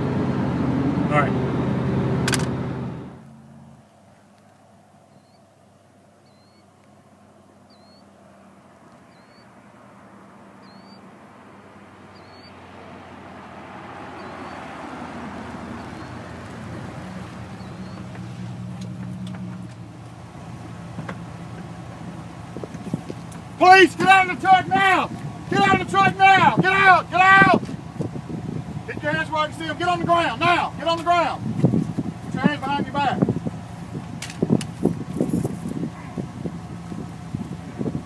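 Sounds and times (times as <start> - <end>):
vehicle engine approaching: 0.0 - 38.0
sharp clicks: 2.2 - 2.6.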